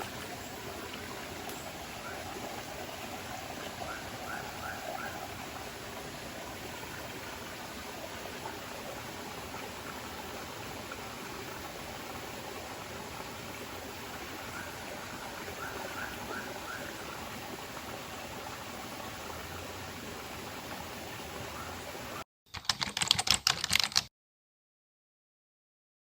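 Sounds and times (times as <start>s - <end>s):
forest stream rushing: 0.0s - 22.2s.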